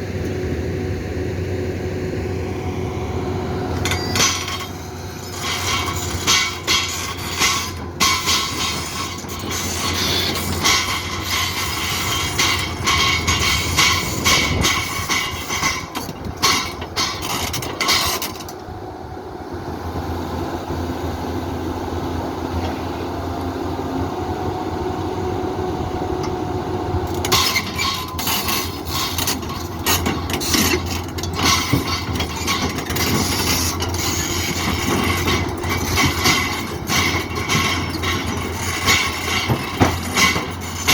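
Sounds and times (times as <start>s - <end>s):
excavator engine hum: 0.0s - 40.9s
steel tracks clanking: 2.6s - 18.7s, 25.6s - 40.9s.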